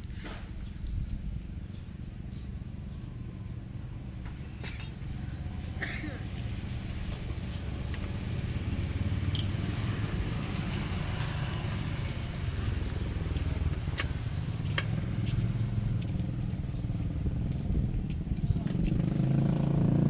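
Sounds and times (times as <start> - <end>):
low engine-like rumble: 0.5 - 19.6.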